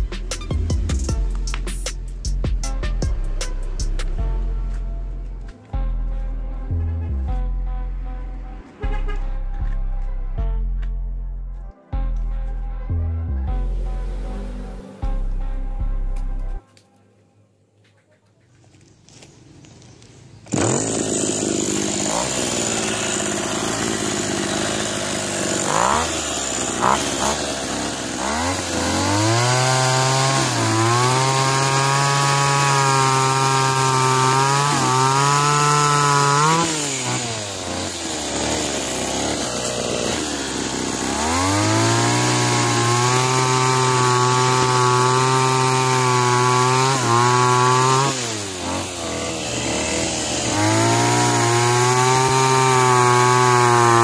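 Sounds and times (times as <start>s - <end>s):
small engine revving: 20.4s - 54.0s.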